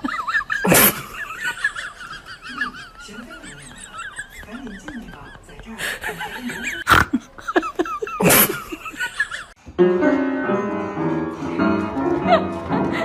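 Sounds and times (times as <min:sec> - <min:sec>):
piano music: 0:09.6 - 0:13.0.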